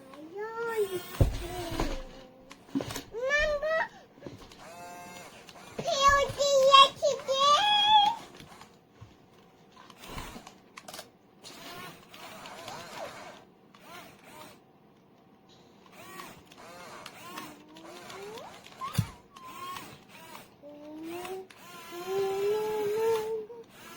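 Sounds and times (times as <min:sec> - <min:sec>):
children talking and calling: 0:00.0 - 0:04.4, 0:05.6 - 0:08.3, 0:17.4 - 0:19.9, 0:20.6 - 0:23.8.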